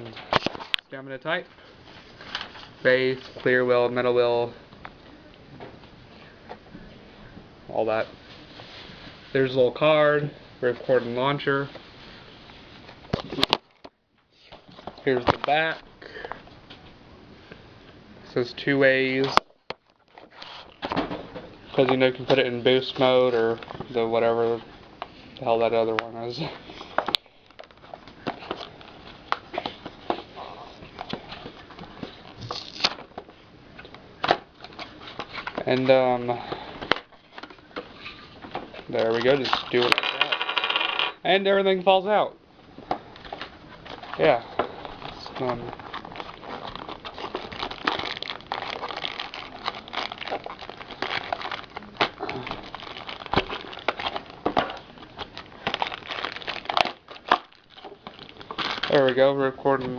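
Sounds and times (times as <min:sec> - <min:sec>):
plastic blister package crinkling: 0:38.8 - 0:41.1, 0:43.2 - 0:59.2.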